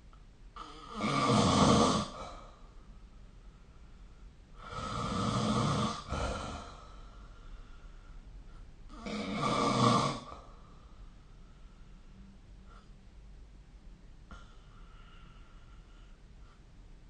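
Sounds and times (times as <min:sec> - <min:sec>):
person snoring: 0:00.6 - 0:02.5, 0:04.6 - 0:07.0, 0:08.9 - 0:10.5.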